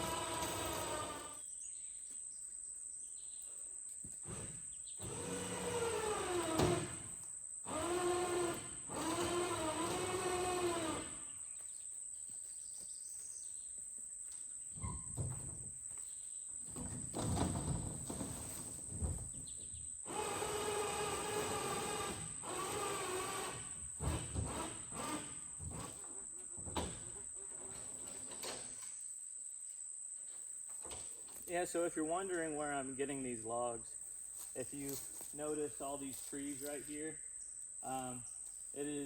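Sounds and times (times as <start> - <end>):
mechanical hum: 0.0 - 1.7, 4.0 - 16.0, 16.6 - 29.1
insects droning: 0.0 - 39.0.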